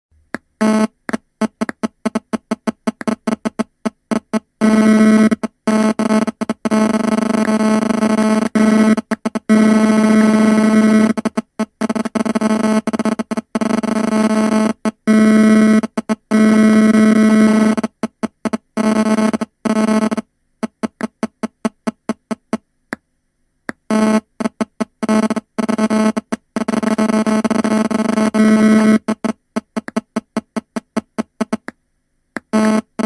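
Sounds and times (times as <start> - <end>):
cell phone interference buzz: 0.6 - 22.6, 23.7 - 31.7, 32.4 - 33.0.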